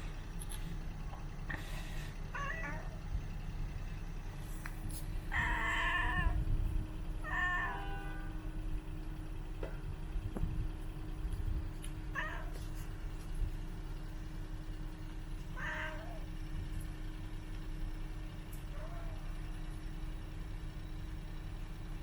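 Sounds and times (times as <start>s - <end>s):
low rumble: 0.0s - 17.6s
cat meowing: 2.3s - 3.0s, 5.3s - 6.5s, 7.2s - 8.4s, 12.1s - 12.7s, 15.5s - 16.3s, 18.7s - 19.2s.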